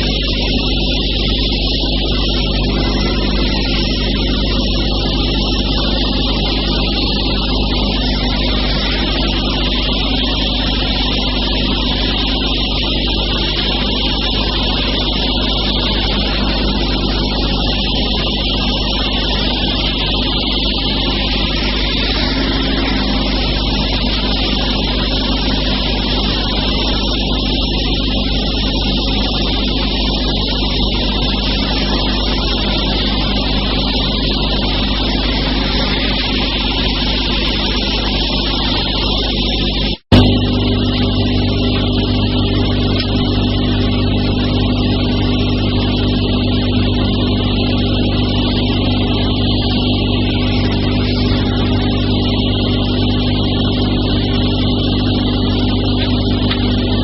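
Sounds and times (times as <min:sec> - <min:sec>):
turning machine humming: 0:00.0 - 0:57.0.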